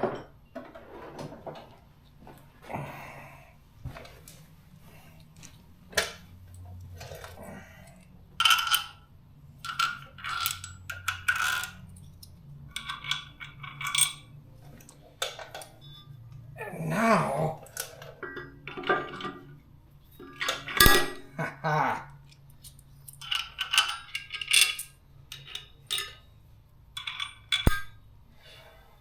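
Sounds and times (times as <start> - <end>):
metal nuts and washers clinking: 8.4 - 9.0, 9.6 - 16.1, 17.6 - 21.4, 22.3 - 26.3, 26.9 - 28.0
metal hardware clattering: 17.8 - 19.5, 20.2 - 21.4, 22.6 - 26.2, 27.0 - 28.0.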